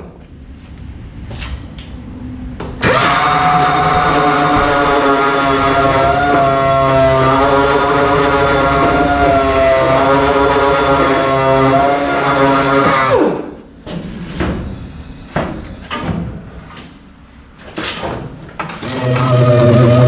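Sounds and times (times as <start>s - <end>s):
power sander running: 2.8s - 13.4s.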